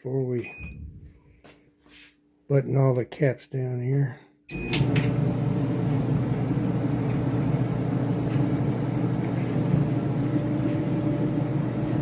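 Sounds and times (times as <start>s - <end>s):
clothes dryer humming: 4.5s - 12.0s.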